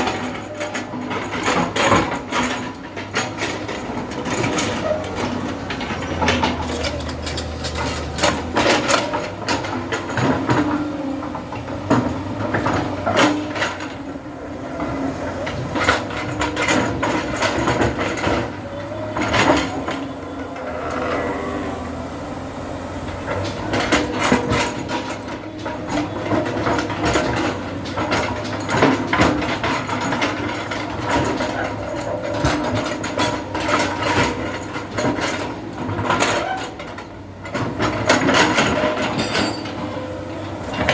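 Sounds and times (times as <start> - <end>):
low engine hum: 0.0 - 36.0
machinery clanks and knocks: 0.0 - 40.9.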